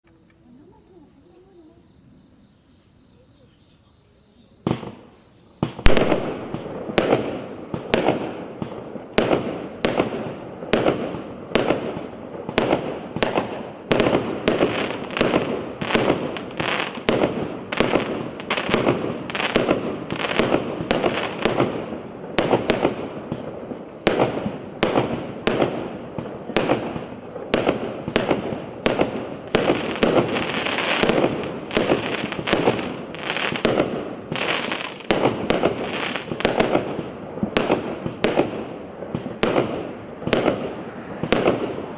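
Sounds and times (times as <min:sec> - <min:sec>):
fireworks bursting: 0:04.6 - 0:41.9
fireworks battery firing: 0:04.7 - 0:41.9.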